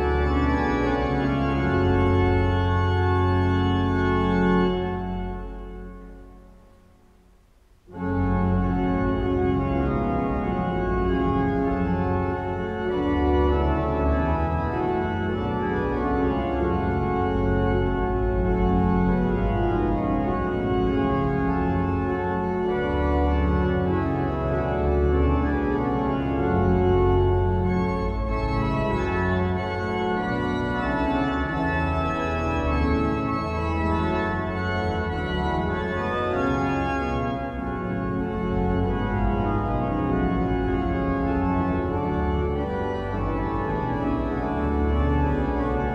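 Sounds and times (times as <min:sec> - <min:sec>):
organ chords: 0:00.0 - 0:45.9.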